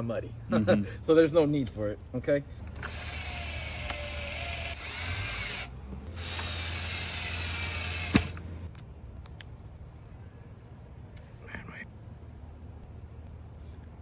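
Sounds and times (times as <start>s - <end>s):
small power tool motor running: 2.8s - 8.4s.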